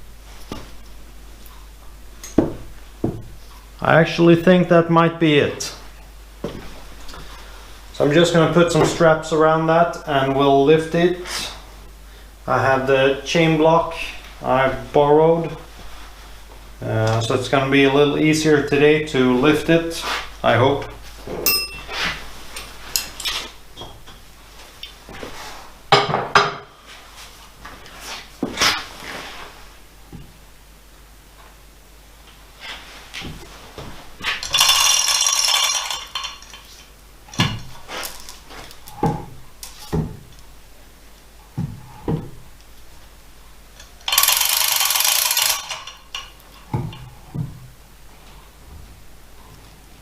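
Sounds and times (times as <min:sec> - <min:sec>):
metal clinking and clanking: 0:21.5 - 0:22.0, 0:34.2 - 0:37.7, 0:44.1 - 0:47.0
chain and ratchet rattling: 0:34.4 - 0:36.7, 0:44.1 - 0:46.4.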